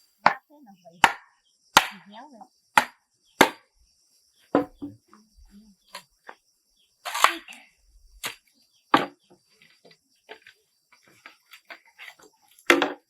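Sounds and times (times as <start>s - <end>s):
sharp knocks on wood: 2.8s - 3.6s, 4.5s - 5.0s, 9.0s - 9.4s.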